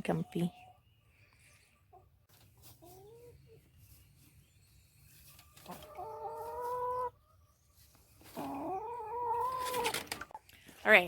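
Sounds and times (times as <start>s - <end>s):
chicken calling: 5.1s - 10.0s.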